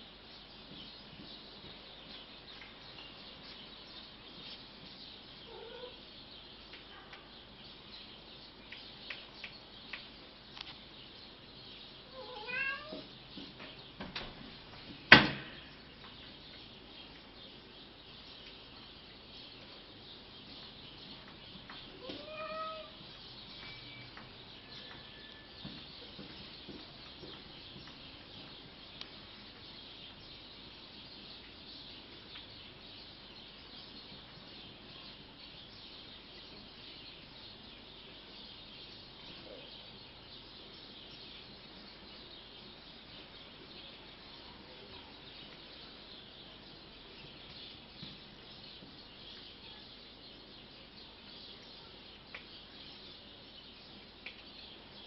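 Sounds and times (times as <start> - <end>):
cat meowing: 5.5 - 6.0, 12.1 - 13.1, 22.0 - 23.0.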